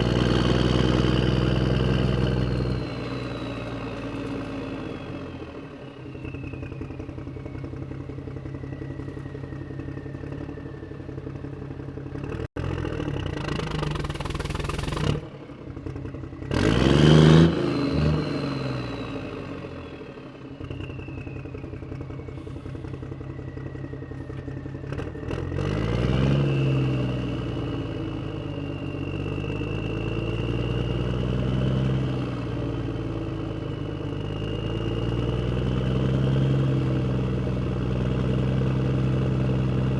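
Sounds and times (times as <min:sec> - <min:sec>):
motorcycle engine revving: 0:12.2 - 0:19.5.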